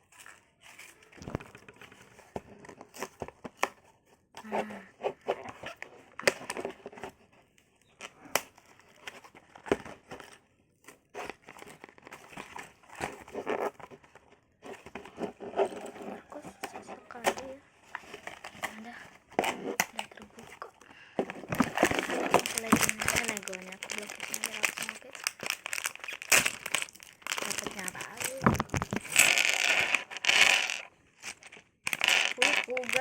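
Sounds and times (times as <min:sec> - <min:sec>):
packaging crinkling and tearing: 0:08.0 - 0:33.0.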